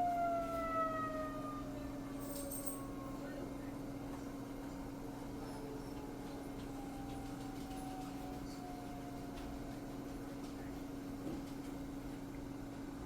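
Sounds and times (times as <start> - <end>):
warning siren winding down: 0.0 - 3.6, 5.0 - 9.9.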